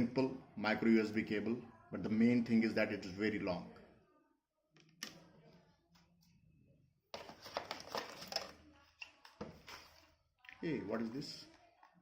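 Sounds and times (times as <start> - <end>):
packaging crinkling and rustling: 7.2 - 8.6.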